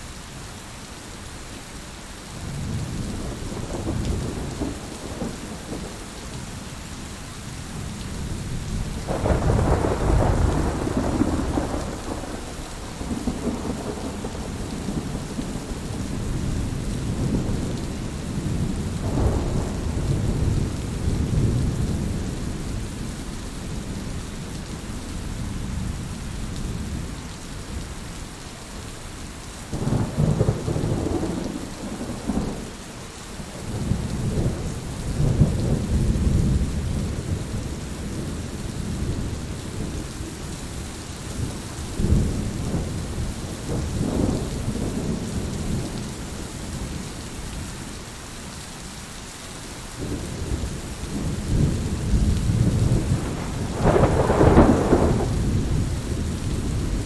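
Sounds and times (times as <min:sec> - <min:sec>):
steady rain: 0:00.0 - 0:57.0
thunder rumbling: 0:02.6 - 0:06.1, 0:07.8 - 0:24.1, 0:29.7 - 0:32.8, 0:33.4 - 0:40.0, 0:41.4 - 0:47.1, 0:50.0 - 0:57.0.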